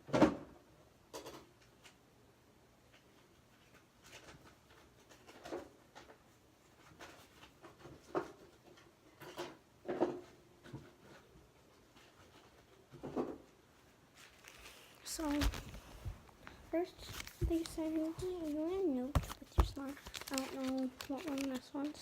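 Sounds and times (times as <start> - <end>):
packaging rustling: 14.2 - 22.0.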